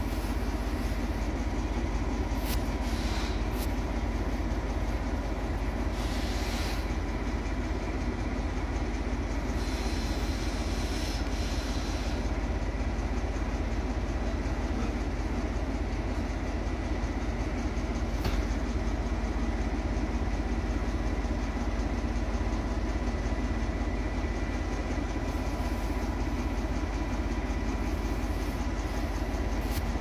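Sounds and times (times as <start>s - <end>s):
diesel locomotive engine throbbing: 0.0s - 30.0s
short hisses: 2.3s - 3.9s.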